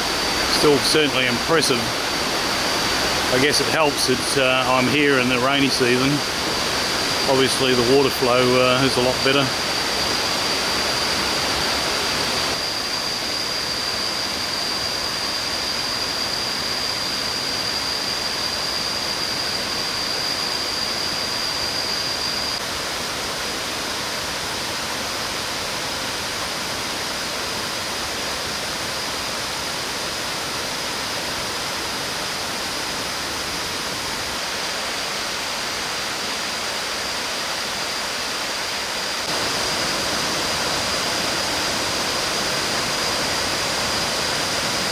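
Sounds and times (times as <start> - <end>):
waterfall rushing: 0.0 - 12.6, 36.5 - 44.9
thin high whine: 0.0 - 22.6, 31.1 - 44.9.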